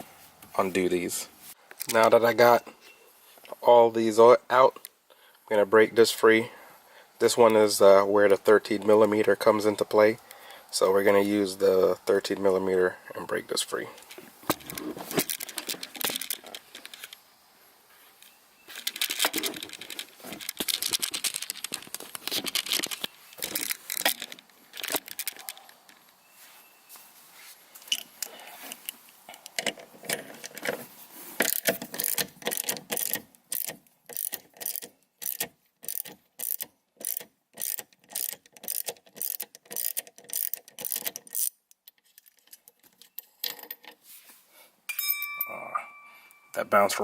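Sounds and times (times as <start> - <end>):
ratchet clicking: 31.4 - 41.6
metallic clatter of wrench: 31.4 - 44.0.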